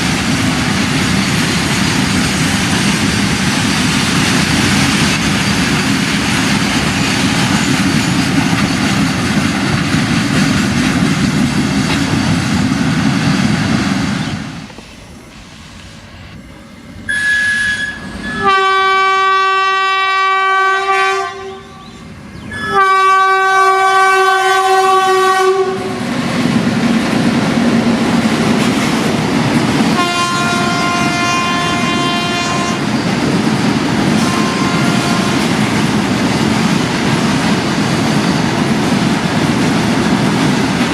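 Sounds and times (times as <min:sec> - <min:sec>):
train wheel clatter: 0:00.0 - 0:16.4, 0:22.4 - 0:40.9
train rumbling along rails: 0:00.0 - 0:40.9
locomotive air horn: 0:17.1 - 0:26.0, 0:29.9 - 0:32.9, 0:34.2 - 0:35.5.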